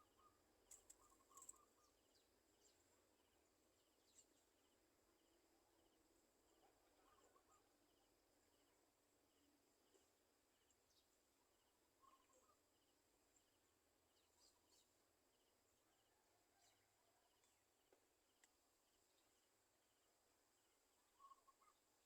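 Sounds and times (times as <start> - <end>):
faint bird calls: 0.0 - 2.8, 6.5 - 8.1, 12.0 - 12.8, 21.0 - 22.0
high insect hum: 0.0 - 17.5.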